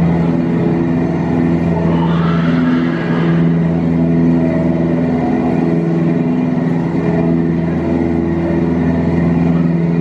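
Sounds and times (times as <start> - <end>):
boat engine droning: 0.0 - 10.0.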